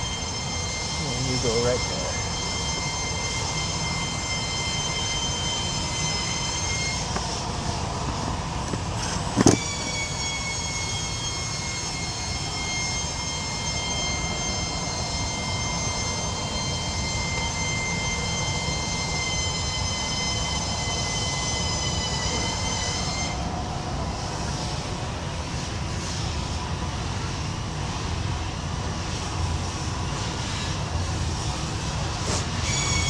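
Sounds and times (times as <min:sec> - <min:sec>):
mechanical rumble: 0:00.0 - 0:26.2
high machine whine: 0:00.0 - 0:33.0.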